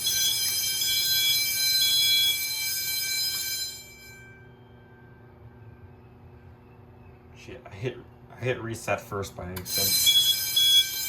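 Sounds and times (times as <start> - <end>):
fire alarm bell ringing: 0.0 - 5.2, 9.6 - 11.0.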